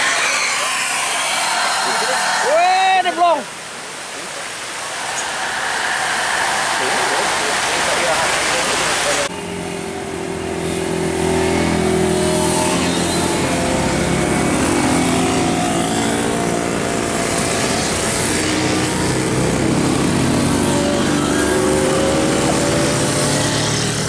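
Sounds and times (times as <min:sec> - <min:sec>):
rain hiss: 0:00.0 - 0:09.3.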